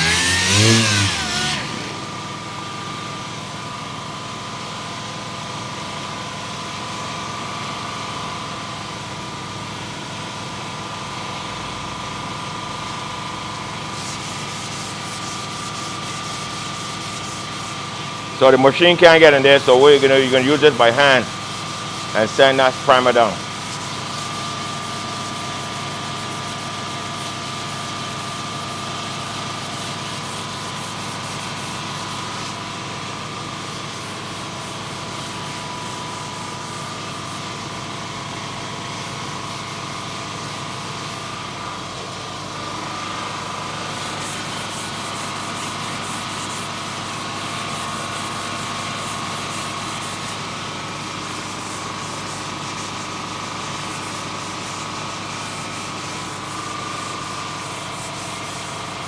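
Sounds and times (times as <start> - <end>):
sandpaper sanding metal panel: 0.0 - 2.1, 13.9 - 41.4, 42.8 - 59.0
steady high whine: 0.0 - 2.8, 13.9 - 38.3.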